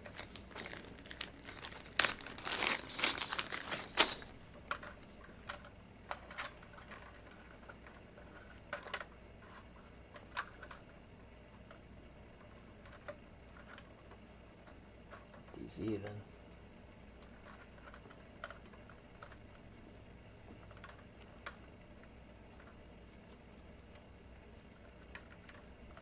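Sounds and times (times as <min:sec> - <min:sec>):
plastic packaging crinkling: 0:00.0 - 0:05.6.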